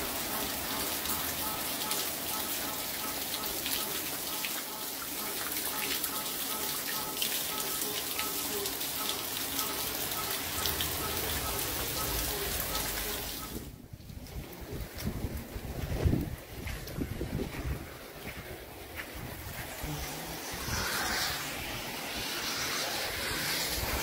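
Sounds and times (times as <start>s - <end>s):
rain splashing on hard surfaces: 0.0s - 24.0s
low rumble: 13.8s - 24.0s.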